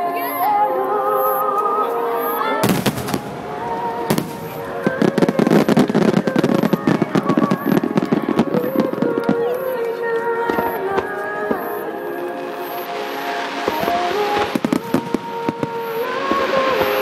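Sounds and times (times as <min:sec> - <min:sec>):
firework booms: 0:02.6 - 0:09.4
rapid firework crackling: 0:02.6 - 0:09.9, 0:10.5 - 0:17.0.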